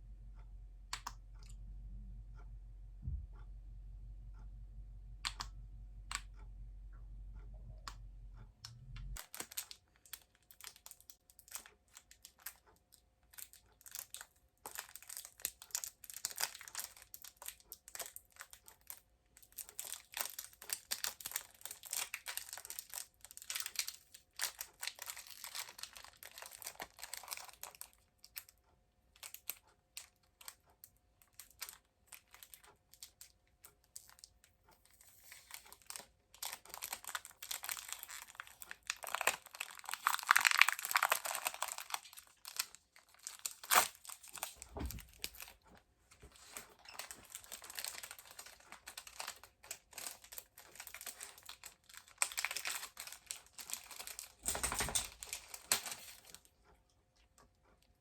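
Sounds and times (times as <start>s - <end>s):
low steady hum: 0.0s - 10.1s
crinkly plastic being handled: 9.1s - 57.9s.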